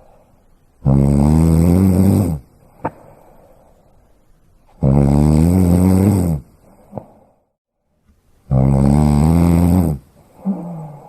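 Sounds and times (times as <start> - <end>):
loud snoring: 0.8 - 2.5, 4.8 - 6.5, 8.5 - 11.0
snort: 0.8 - 2.5, 4.7 - 6.5, 8.5 - 11.0.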